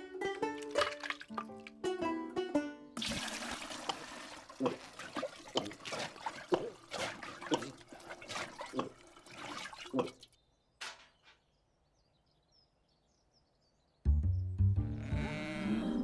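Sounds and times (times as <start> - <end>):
liquid sloshing and gulping: 0.6 - 1.7, 3.0 - 10.4.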